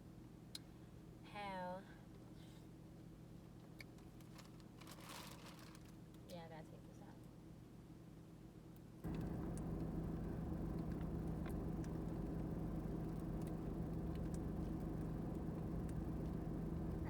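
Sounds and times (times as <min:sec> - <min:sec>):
low mechanical hum: 0:09.0 - 0:17.0
faint clicks: 0:09.1 - 0:17.0.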